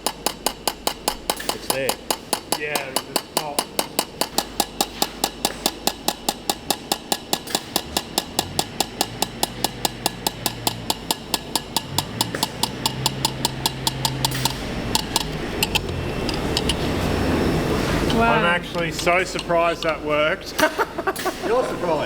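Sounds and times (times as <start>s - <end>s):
rapid even knocks: 0.0s - 16.8s.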